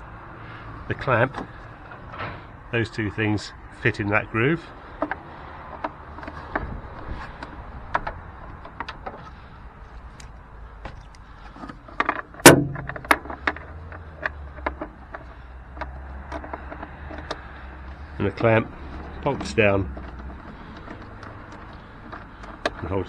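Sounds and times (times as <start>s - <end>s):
metallic clicks and knocks: 1.0s - 2.6s, 4.9s - 23.0s
loud metal clunk: 12.3s - 13.4s.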